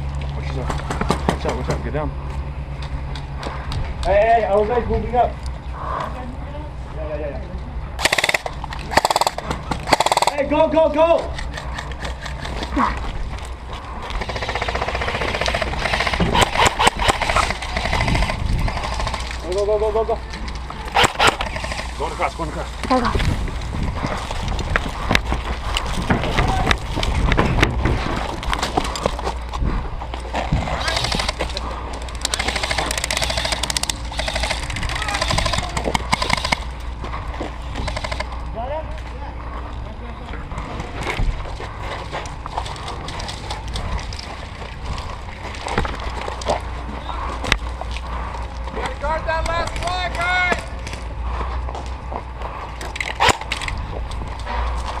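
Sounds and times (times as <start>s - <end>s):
airsoft guns firing full-auto: 8.0s - 10.5s, 14.2s - 19.3s, 20.9s - 21.9s, 32.3s - 36.7s.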